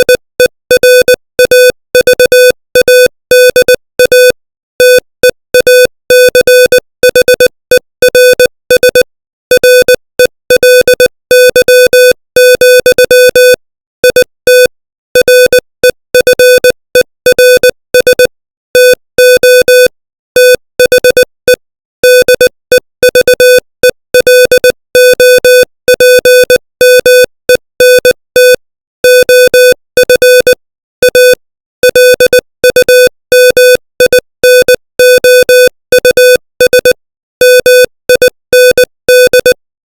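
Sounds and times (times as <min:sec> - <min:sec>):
morse code tone: 0:00.0 - 0:39.6.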